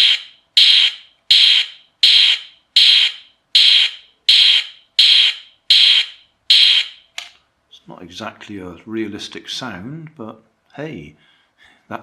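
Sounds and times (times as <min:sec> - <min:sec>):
toy gun electronic sound effect: 0:00.0 - 0:07.0.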